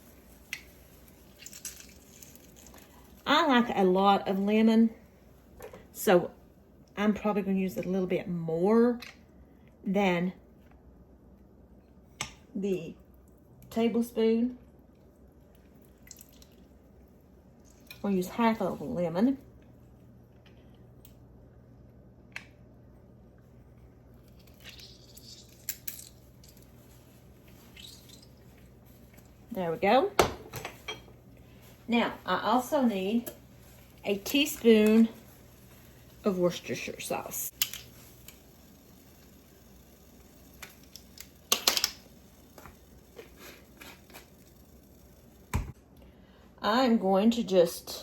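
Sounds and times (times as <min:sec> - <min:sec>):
kitchen items clicking: 0:40.6 - 0:42.1.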